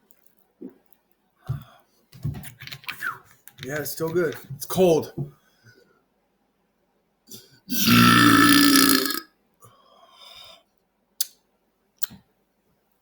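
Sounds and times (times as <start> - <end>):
loud drawn-out belch: 7.7 - 9.3.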